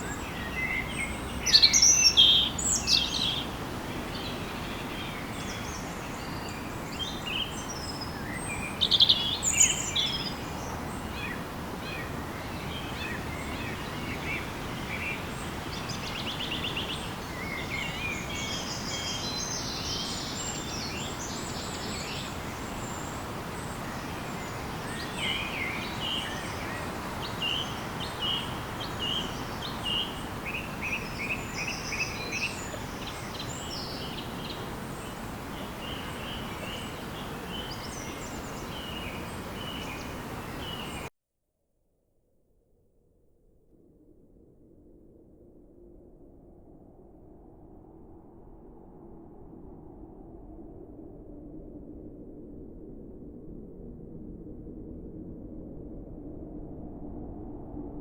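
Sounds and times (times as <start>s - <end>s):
steady background hiss: 0.0s - 41.1s.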